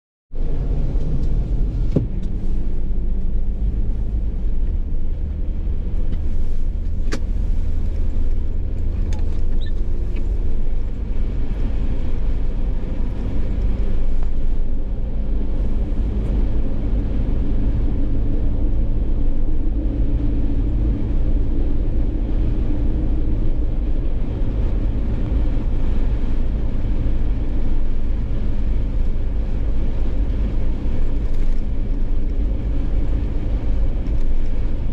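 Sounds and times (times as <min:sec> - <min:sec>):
car road and engine rumble: 0:00.3 - 0:34.9.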